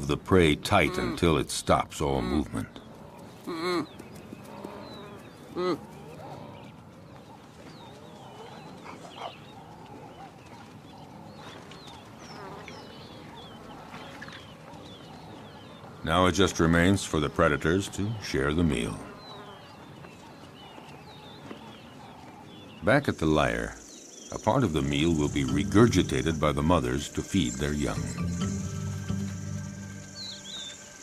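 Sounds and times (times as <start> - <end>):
wild dogs twittering chirps: 2.8 - 16.6, 18.8 - 31.0
high wavering chirps: 24.4 - 31.0.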